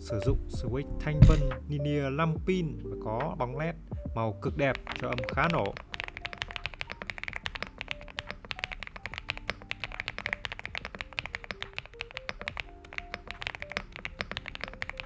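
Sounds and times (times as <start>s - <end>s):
fast mechanical keyboard typing: 4.7s - 15.0s.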